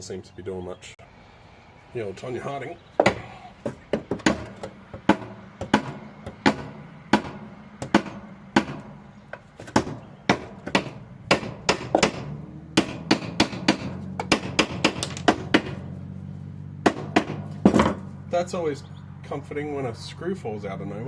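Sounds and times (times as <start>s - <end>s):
hammer striking metal: 4.2s - 9.0s, 9.8s - 15.8s.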